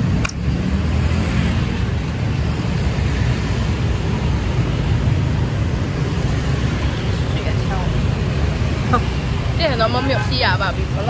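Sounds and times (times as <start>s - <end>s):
road traffic rumble: 0.0s - 11.0s.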